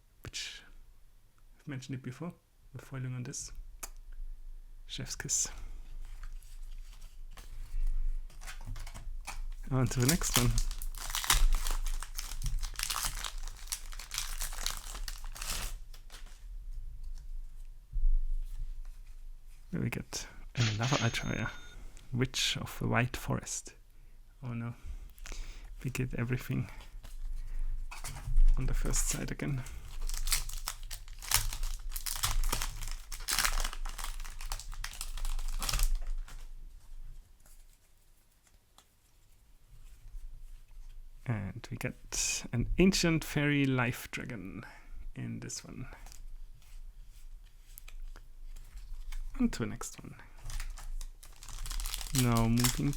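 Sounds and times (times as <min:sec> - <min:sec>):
foil wrapper tearing and crinkling: 0:09.3 - 0:16.4, 0:29.7 - 0:36.5, 0:50.4 - 0:52.9.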